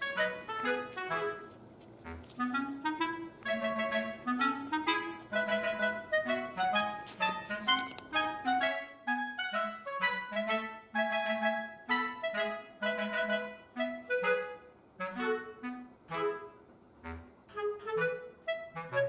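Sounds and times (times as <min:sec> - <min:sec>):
light background music: 0:00.0 - 0:12.7.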